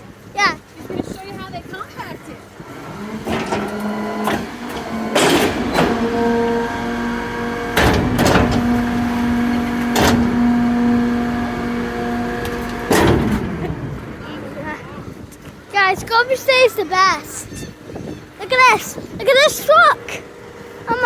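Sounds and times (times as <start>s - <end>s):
garbage truck compactor whine: 1.0s - 15.6s, 17.9s - 21.0s
sharp metal clanks: 3.2s - 13.5s.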